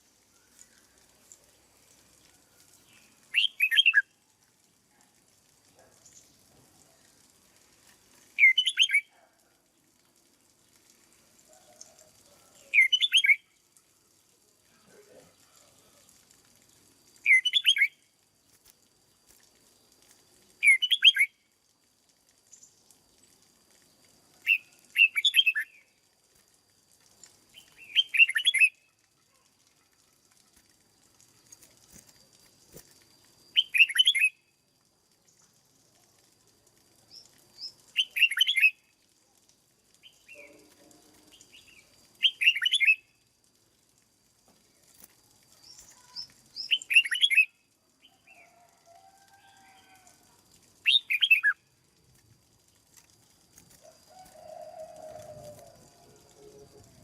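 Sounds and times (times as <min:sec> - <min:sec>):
bird song phrases: 0:02.8 - 0:04.0, 0:08.4 - 0:09.3, 0:11.7 - 0:13.4, 0:17.2 - 0:18.0, 0:20.6 - 0:21.3, 0:27.6 - 0:28.8, 0:33.6 - 0:34.4, 0:37.2 - 0:38.8, 0:40.0 - 0:43.0, 0:45.6 - 0:48.6, 0:50.8 - 0:51.6.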